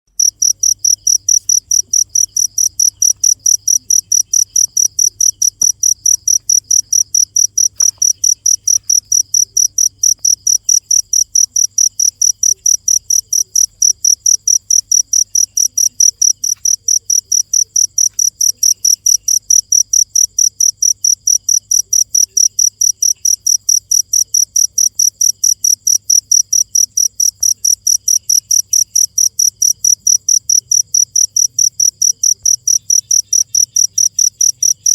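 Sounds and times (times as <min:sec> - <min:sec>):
cricket chirping: 0:00.1 - 0:34.9.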